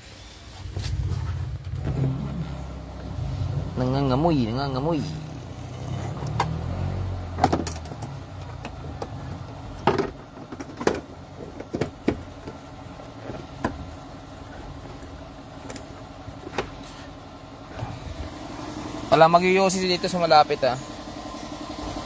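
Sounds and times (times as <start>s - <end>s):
steady low hum: 0.0s - 6.2s, 8.2s - 22.0s
low rumble: 0.1s - 5.8s, 17.6s - 19.4s
tools clicking and knocking: 7.4s - 12.6s.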